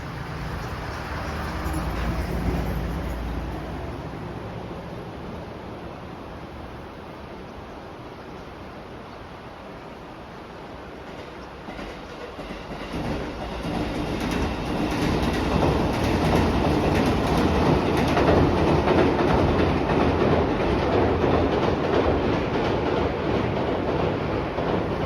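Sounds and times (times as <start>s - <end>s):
train rumbling over bridge: 0.0s - 25.0s
wheel clatter over rail joints: 11.1s - 25.0s.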